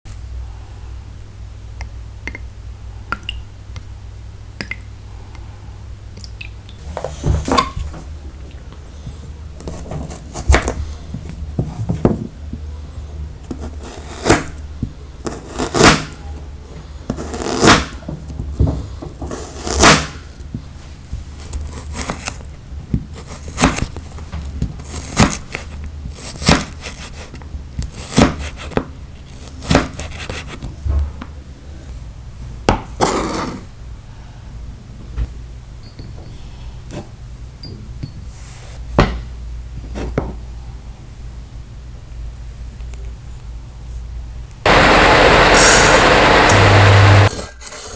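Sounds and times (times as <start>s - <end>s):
low steady hum: 0.1s - 33.0s
food preparation knocks and scrapes: 9.6s - 12.7s, 17.1s - 31.3s.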